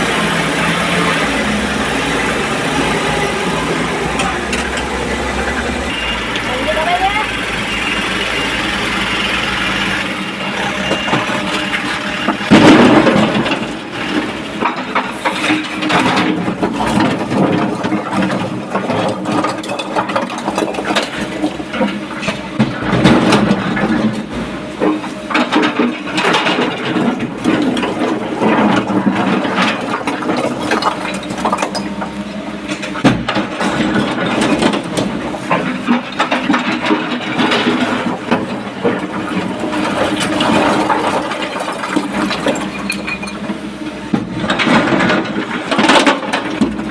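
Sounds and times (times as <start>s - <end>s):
excavator diesel engine: 0.0s - 46.9s
machine clanks and knocks: 10.8s - 46.9s.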